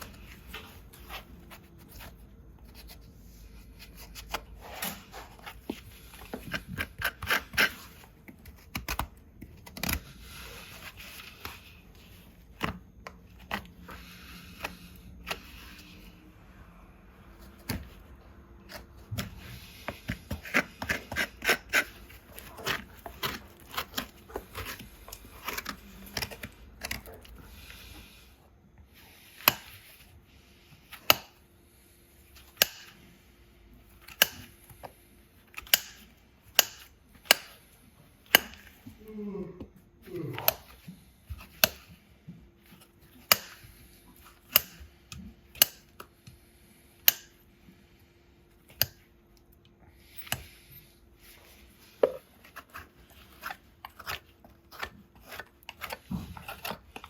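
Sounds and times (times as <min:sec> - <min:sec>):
hand tools paring a hoof: 0:18.7 - 0:28.1, 0:32.4 - 0:33.0, 0:35.5 - 0:42.0, 0:42.7 - 0:46.1, 0:47.0 - 0:47.4.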